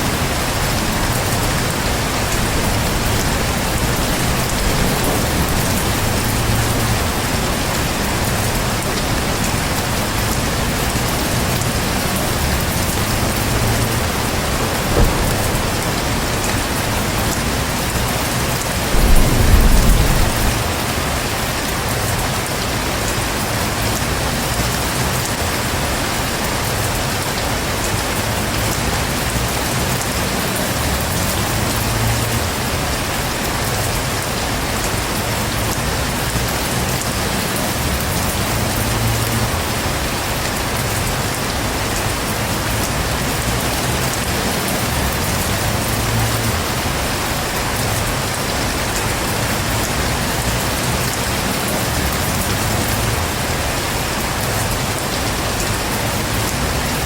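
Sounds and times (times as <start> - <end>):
low rumble of thunder: 0.0 - 22.5
heavy rain falling: 0.0 - 57.0.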